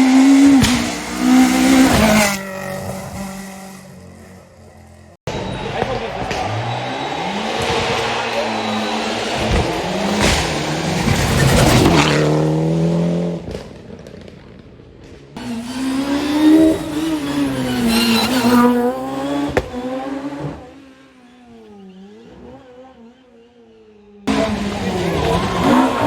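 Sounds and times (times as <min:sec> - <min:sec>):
rally car engines at full throttle: 0:00.0 - 0:26.0.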